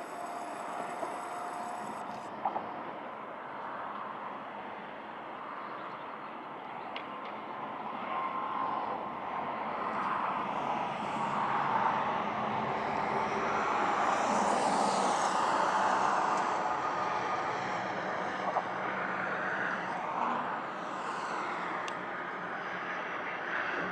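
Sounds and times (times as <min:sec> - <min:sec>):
traffic passing: 0:09.9 - 0:23.9.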